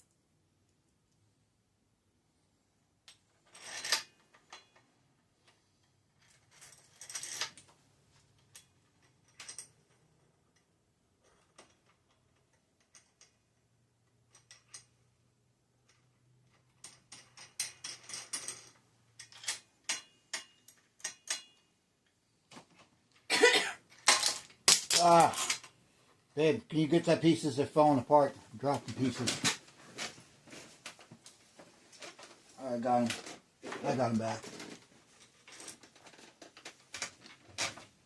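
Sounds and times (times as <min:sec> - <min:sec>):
metal parts clinking and clicking: 0:03.1 - 0:04.8, 0:06.2 - 0:07.7, 0:08.4 - 0:10.7, 0:14.3 - 0:14.9, 0:15.8 - 0:21.7, 0:23.9 - 0:25.8.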